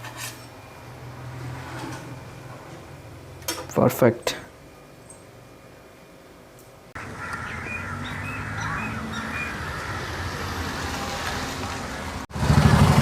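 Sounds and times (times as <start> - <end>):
outdoor background hum: 0.0 - 13.0
birds chirping: 7.0 - 11.1.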